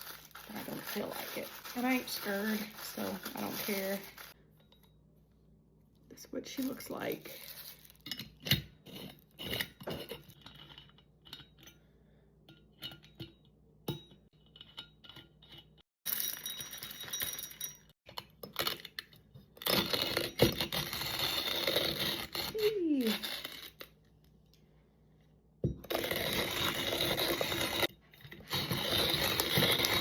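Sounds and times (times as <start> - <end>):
hand grinder crunching beans: 0.0 - 4.4, 19.6 - 24.0, 25.8 - 30.0.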